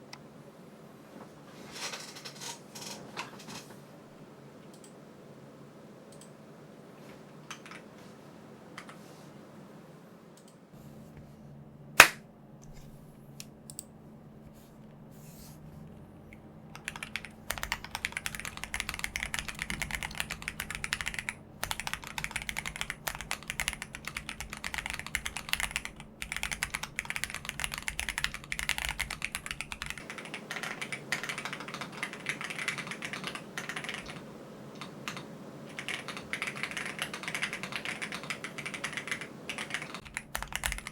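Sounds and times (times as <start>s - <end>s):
fast typing on a keyboard: 7.5s - 7.9s, 16.8s - 40.9s
loud sharp click: 12.0s - 12.2s.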